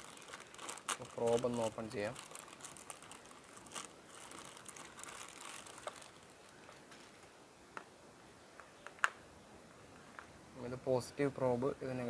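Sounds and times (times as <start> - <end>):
plastic packaging rustling: 0.0 - 7.3.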